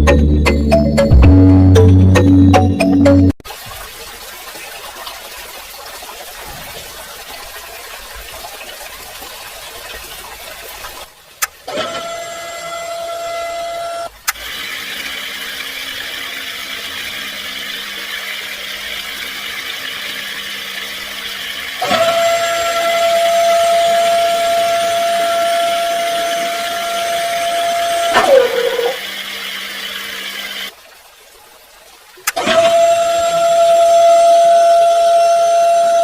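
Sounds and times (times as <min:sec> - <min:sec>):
low motor hum: 0:00.0 - 0:03.3, 0:11.8 - 0:30.7
high motor whine: 0:21.6 - 0:30.7.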